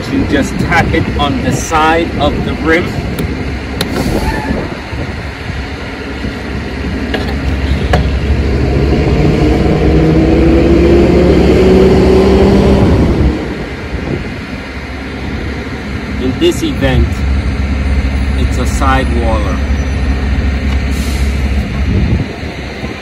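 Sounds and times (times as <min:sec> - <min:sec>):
motor vehicle engine passing: 0:07.4 - 0:16.0.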